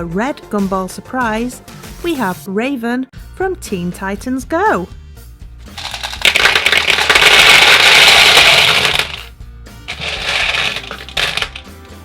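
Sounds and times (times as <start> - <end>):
quiet background music: 0.0 - 12.0
plastic packaging crinkling: 5.8 - 9.3, 9.9 - 11.6.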